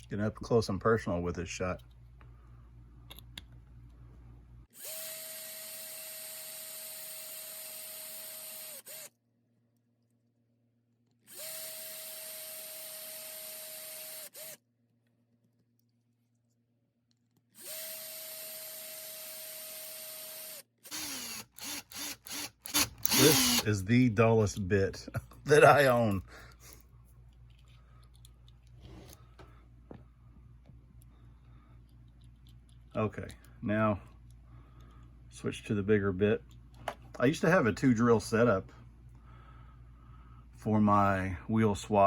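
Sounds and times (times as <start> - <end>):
small power drill running: 4.7 - 9.1, 11.3 - 14.6, 17.6 - 23.7.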